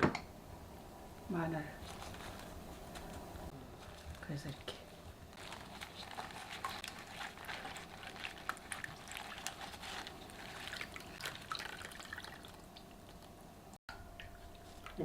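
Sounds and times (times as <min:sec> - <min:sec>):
wet squelching and dripping: 0:05.4 - 0:13.3.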